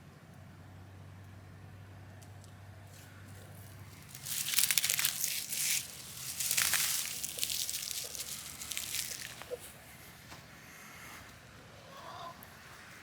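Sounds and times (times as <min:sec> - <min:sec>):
rustle: 0:02.2 - 0:13.0
dry weeds crunching: 0:02.9 - 0:10.3.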